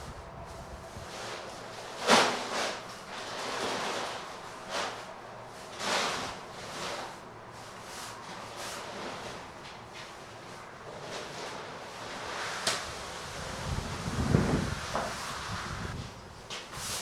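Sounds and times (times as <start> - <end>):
wind gusting: 12.8 - 16.2.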